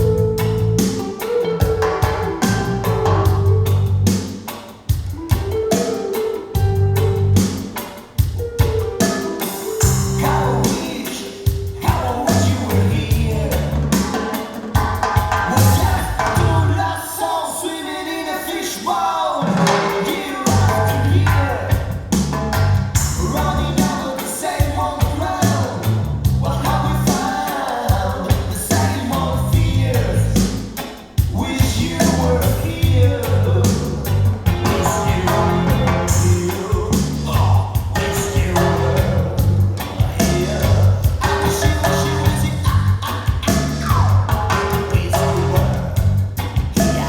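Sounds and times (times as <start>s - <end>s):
song with vocals drums and bass: 0.0s - 47.0s.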